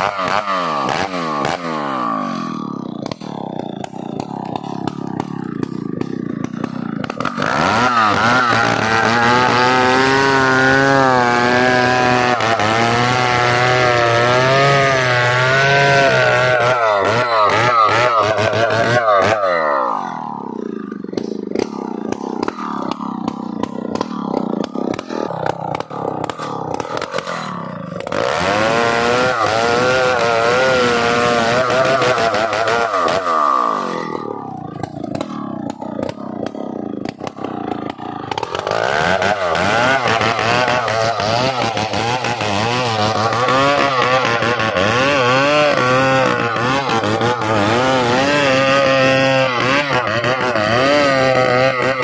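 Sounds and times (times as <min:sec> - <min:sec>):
chainsaw cutting tree trunk: 0:00.0 - 0:52.0.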